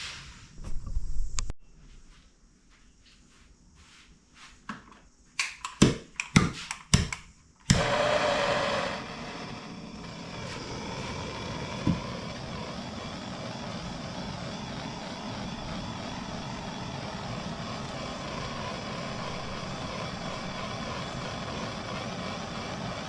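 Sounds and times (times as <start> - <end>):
knocks and clicks of handling: 4.7 - 7.8
motor whirring: 7.7 - 23.0.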